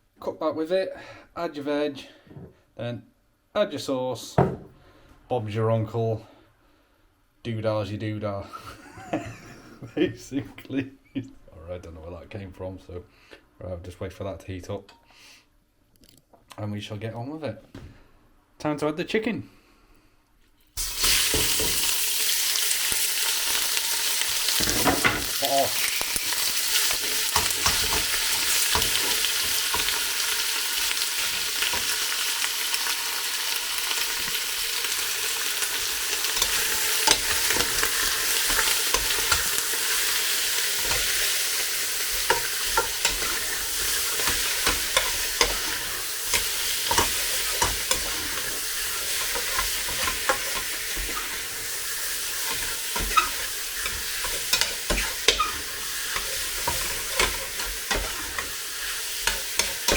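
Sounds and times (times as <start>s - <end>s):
chicken sizzling in a frying pan: 20.8s - 59.9s.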